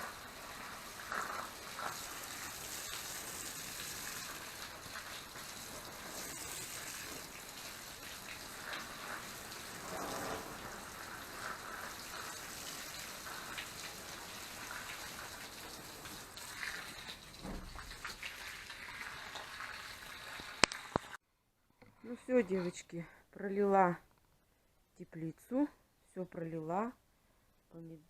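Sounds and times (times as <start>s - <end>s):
water pouring onto soil and plants: 0.0s - 21.2s.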